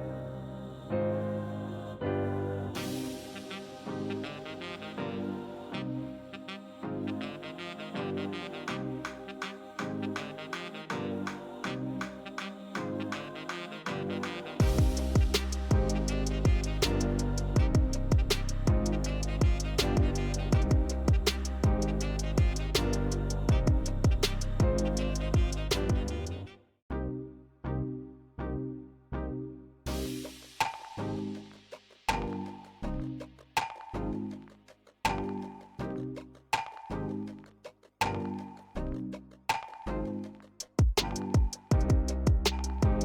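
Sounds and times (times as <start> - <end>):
upbeat jazzy brass music: 2.8 - 26.6, 41.0 - 43.0.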